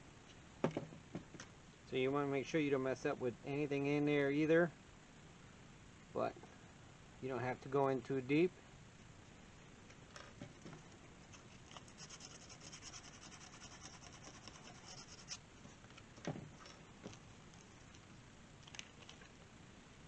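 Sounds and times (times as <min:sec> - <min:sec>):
faint scratching and rubbing: 0:10.4 - 0:19.4.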